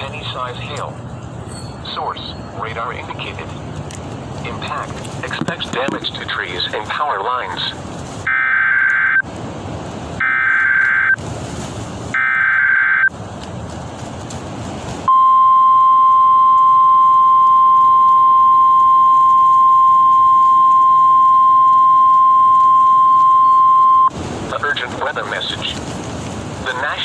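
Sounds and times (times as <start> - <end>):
radio static hiss: 0.0 - 1.0, 1.8 - 3.6, 4.4 - 9.2, 10.2 - 11.2, 19.5 - 27.0
steady warning alarm tone: 10.2 - 11.2, 15.1 - 24.1.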